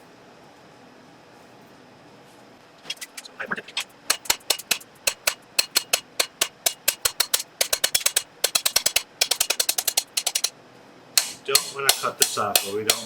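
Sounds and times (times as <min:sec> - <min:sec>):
hammer ringing on steel anvil: 0:04.1 - 0:10.5, 0:11.2 - 0:13.0.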